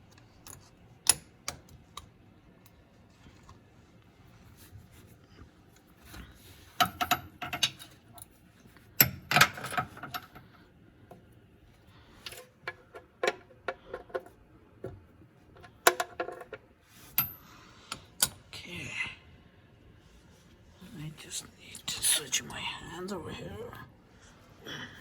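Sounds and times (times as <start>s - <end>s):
tools and metal parts clinking: 6.7s - 8.4s.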